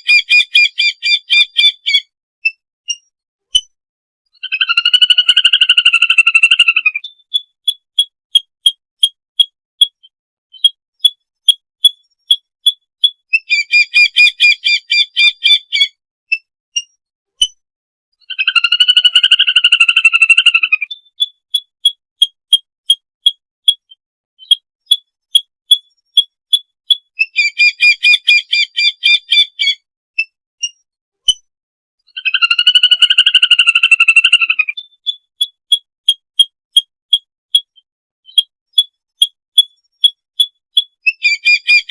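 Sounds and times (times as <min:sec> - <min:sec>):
high whistled peeps: 0:07.0 - 0:17.6, 0:21.2 - 0:31.4, 0:35.0 - 0:41.9
whistling duck chatter: 0:11.9 - 0:16.5, 0:26.2 - 0:29.8, 0:37.6 - 0:41.9.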